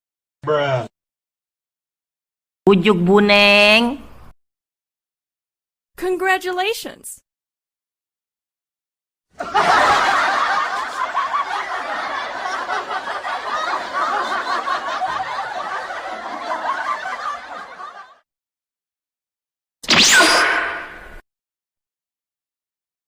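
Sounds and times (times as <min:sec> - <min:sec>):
crowd laughing: 0:09.4 - 0:18.2.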